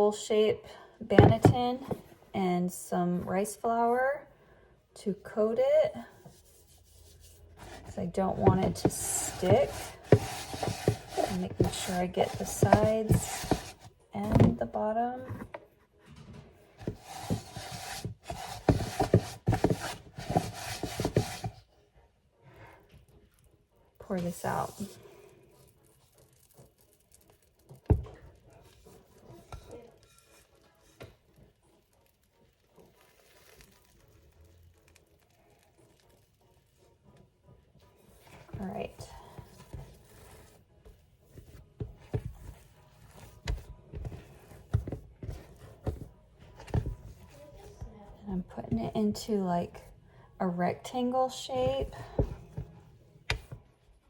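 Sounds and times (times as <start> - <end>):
hands kneading dough on countertop: 5.2 - 21.6, 24.1 - 37.2, 37.8 - 49.2, 51.3 - 53.7
hand rubbing flour in basket: 6.3 - 13.9, 16.8 - 21.5.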